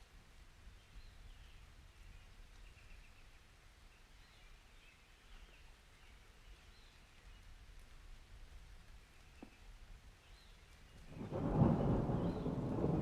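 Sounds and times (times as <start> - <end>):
distant bird chirps: 10.3 - 13.0.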